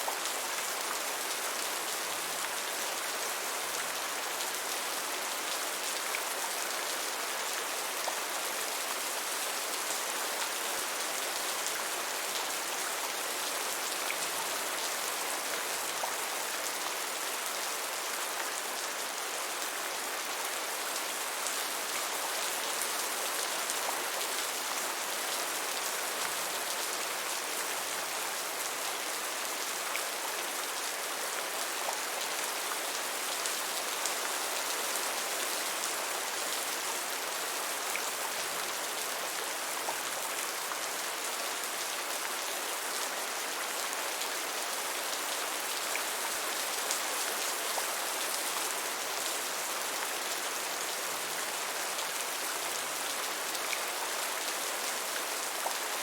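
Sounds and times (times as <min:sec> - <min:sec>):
gentle rain falling: 0:00.0 - 0:56.0.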